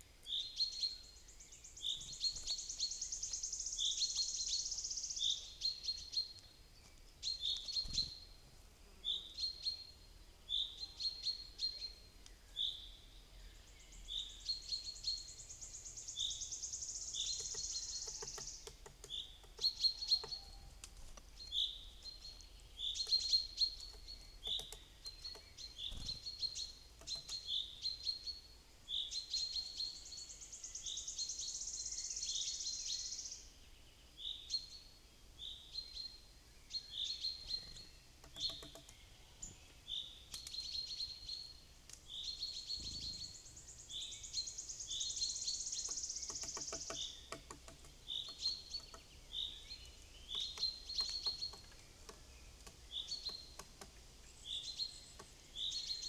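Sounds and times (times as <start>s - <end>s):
songbird short high chirps: 36.8s - 53.6s.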